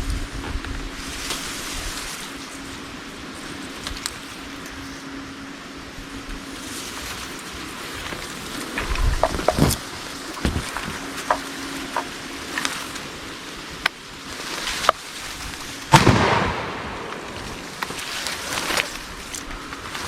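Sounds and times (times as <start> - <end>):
shotgun shot with echo: 15.9 - 17.3.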